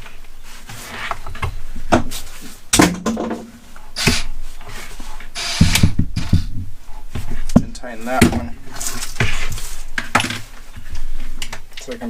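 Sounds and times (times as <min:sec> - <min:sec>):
sharp knocks: 0:05.6 - 0:06.8.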